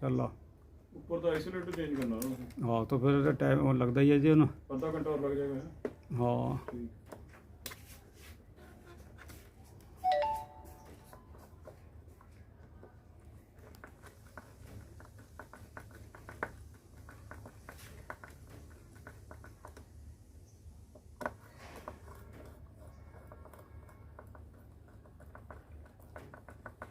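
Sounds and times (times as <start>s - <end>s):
short electronic chime: 10.0s - 11.1s.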